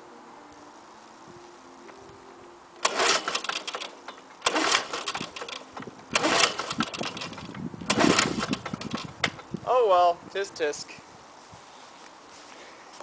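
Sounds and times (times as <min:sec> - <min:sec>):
engine cranking with recoil starter: 0:02.8 - 0:09.5.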